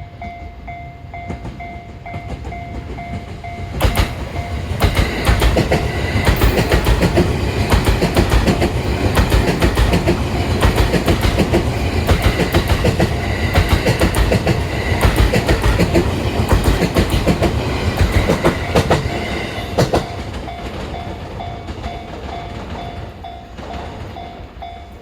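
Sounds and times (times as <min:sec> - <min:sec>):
level crossing warning bell: 0:00.0 - 0:09.0, 0:17.3 - 0:25.0
heavy train rumble: 0:00.0 - 0:25.0
train wheels clacking: 0:01.2 - 0:25.0.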